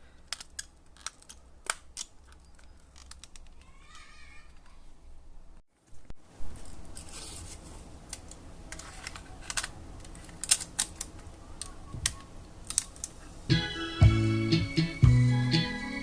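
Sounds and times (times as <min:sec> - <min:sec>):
music playing: 0:13.5 - 0:16.0.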